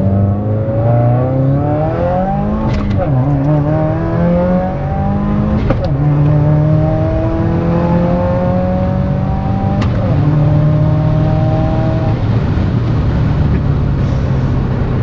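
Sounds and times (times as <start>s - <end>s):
car engine accelerating hard: 0.0s - 15.0s
gear shift click: 2.2s - 8.4s, 9.7s - 10.4s.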